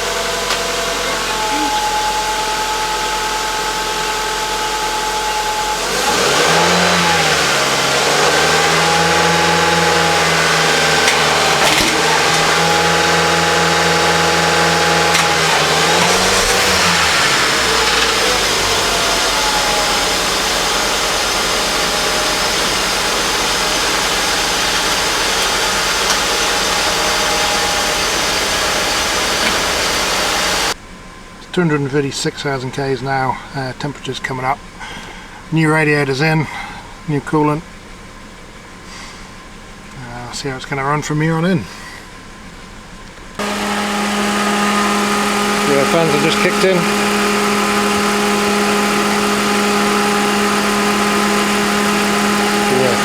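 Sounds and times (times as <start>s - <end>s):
car engine idling and revving: 0.0s - 31.4s, 41.9s - 53.0s.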